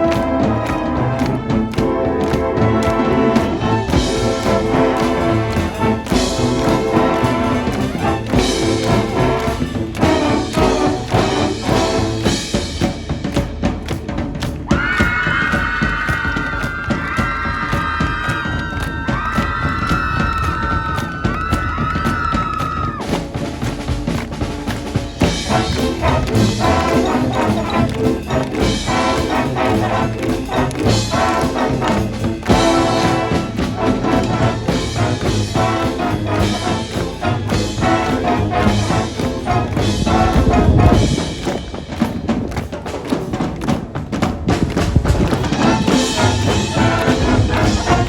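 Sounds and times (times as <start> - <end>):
brass section playing: 0.0 - 14.0, 23.6 - 43.8, 44.4 - 48.0
marching drums: 0.0 - 48.0.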